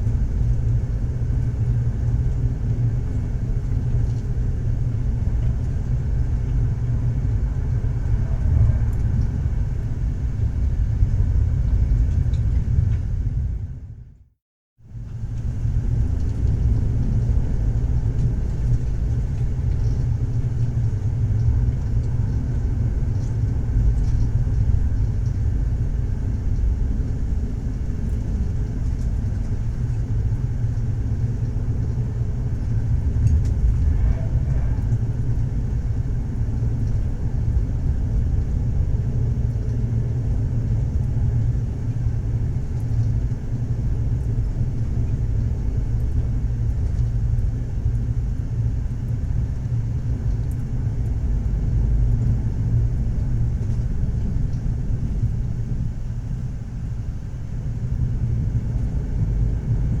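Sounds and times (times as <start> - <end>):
train wheels rumbling on track: 0.0 - 13.8, 15.1 - 42.1.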